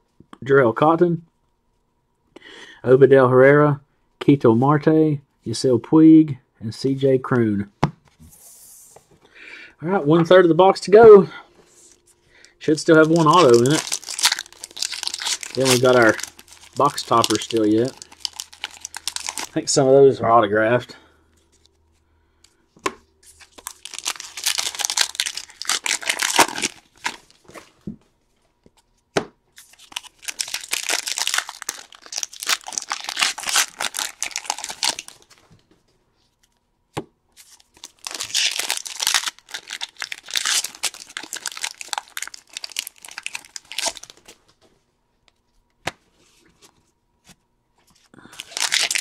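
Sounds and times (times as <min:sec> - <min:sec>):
wrappers tearing and crinkling: 0:12.8 - 0:19.6, 0:23.2 - 0:27.6, 0:29.6 - 0:35.4, 0:37.4 - 0:44.4, 0:48.2 - 0:49.0.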